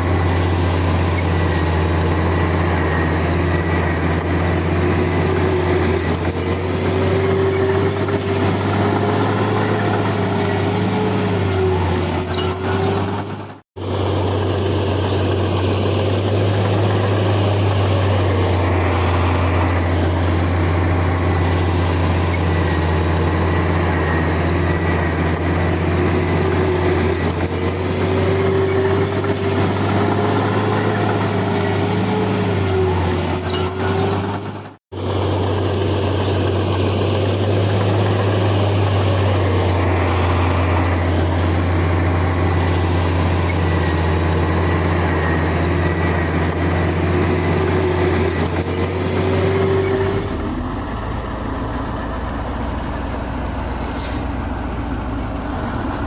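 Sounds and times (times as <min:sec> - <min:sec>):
diesel engine running under load: 0:00.0 - 0:56.0
wavering whine: 0:53.1 - 0:54.6.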